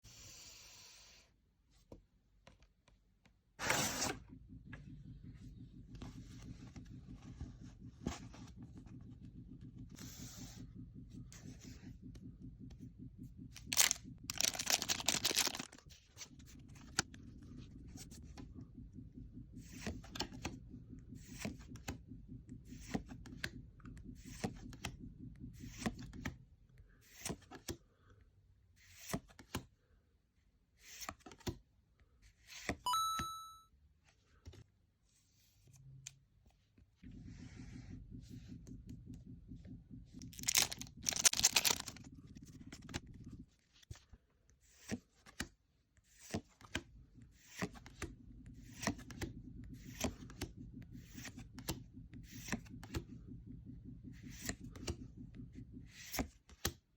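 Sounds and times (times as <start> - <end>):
steady low hum: 4.1 - 26.4, 37.0 - 43.5
cards crackling and clicking: 13.6 - 15.8, 40.3 - 42.0
foil wrapper tearing and crinkling: 13.8 - 15.6, 40.4 - 42.0
short electronic tone: 32.9 - 33.6.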